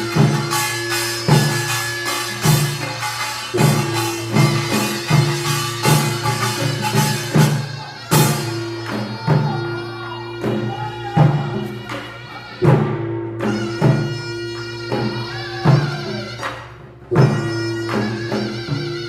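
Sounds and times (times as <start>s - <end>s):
drum strokes: 0.0s - 9.8s.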